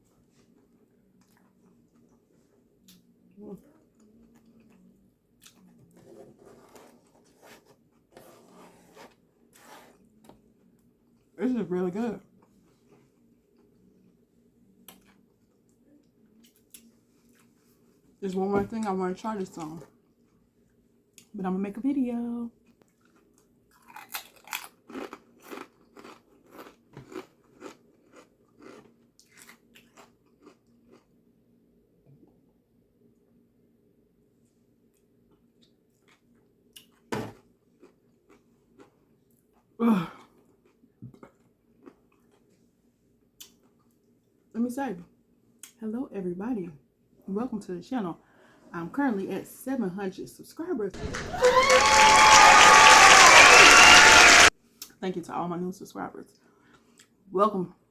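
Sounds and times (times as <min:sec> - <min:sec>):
person chewing food: 0:22.6 - 0:31.2, 0:37.7 - 0:39.7, 0:40.4 - 0:42.6.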